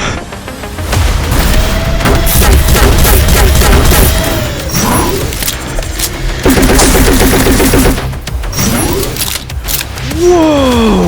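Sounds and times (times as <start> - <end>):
background music: 0.0 - 11.0
automatic gunfire: 2.2 - 5.0, 6.4 - 8.1.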